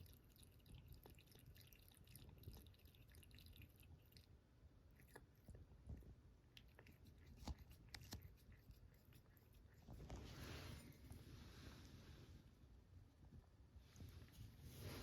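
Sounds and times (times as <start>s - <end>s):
cat lapping water: 0.0s - 11.3s.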